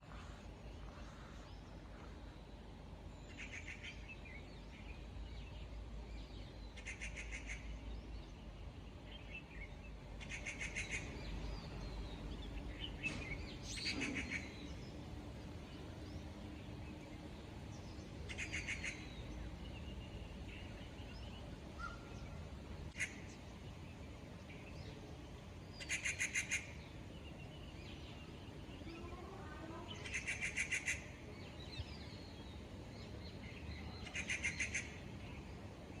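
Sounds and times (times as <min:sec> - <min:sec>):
steady low rumble: 0:00.0 - 0:25.8.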